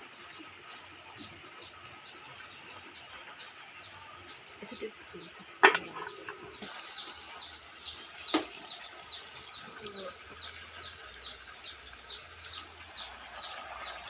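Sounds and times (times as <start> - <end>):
small bird chirping: 0.6 - 14.0.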